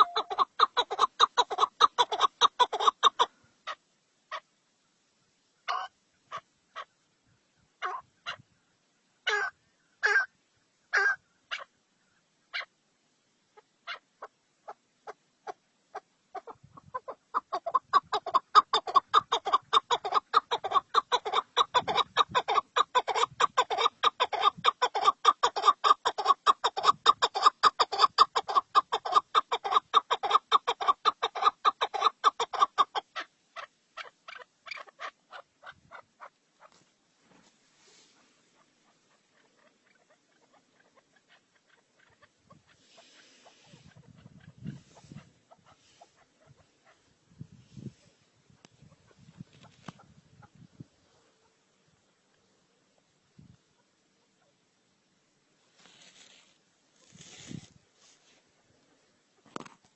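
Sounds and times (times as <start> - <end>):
fowl-like bird clucking: 0.0 - 4.5, 5.6 - 6.9, 7.8 - 8.5, 9.2 - 10.3, 10.9 - 11.8, 12.5 - 12.7, 13.6 - 36.8, 38.6 - 47.1.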